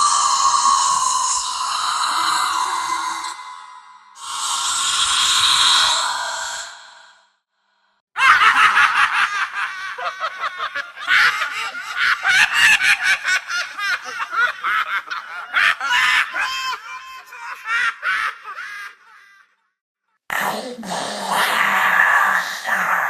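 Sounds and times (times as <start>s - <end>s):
high-pitched witch's cackle: 8.2s - 19.5s.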